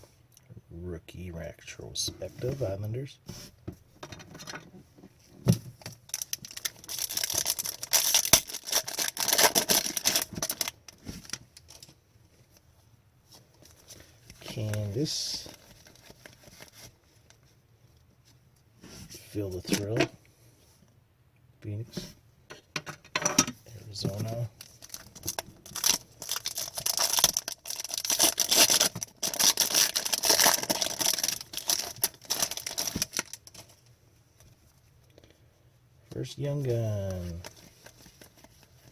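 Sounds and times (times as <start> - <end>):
foil wrapper crinkling and tearing: 6.1 - 11.9, 24.2 - 33.8.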